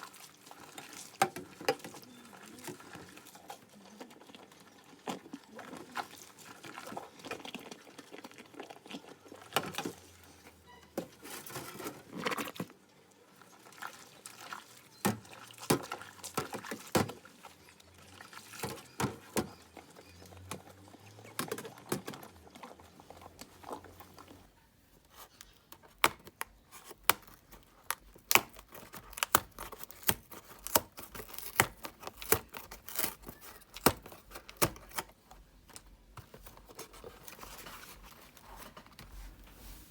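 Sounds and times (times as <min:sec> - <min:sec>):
water splashing in sink: 0:13.4 - 0:24.2.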